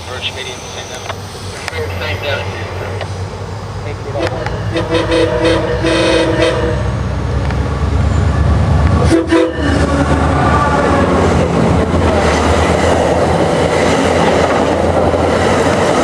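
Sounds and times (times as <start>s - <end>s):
train wheels on rails: 0.0s - 16.0s
train horn blast: 4.1s - 7.1s, 9.0s - 11.0s.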